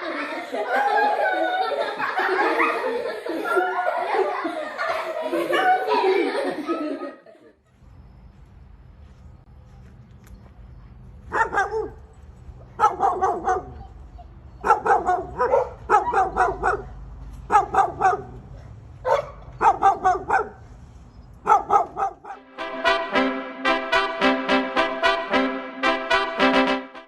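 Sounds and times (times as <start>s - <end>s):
dog barking: 11.3s - 12.1s, 12.8s - 13.8s, 14.6s - 18.4s, 19.0s - 20.6s, 21.4s - 22.4s
music: 22.4s - 27.0s.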